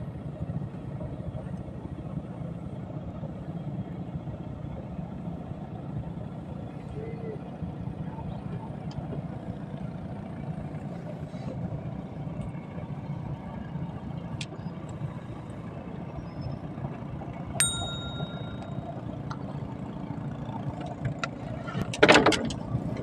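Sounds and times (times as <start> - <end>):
bright bell ding: 17.6 - 19.0.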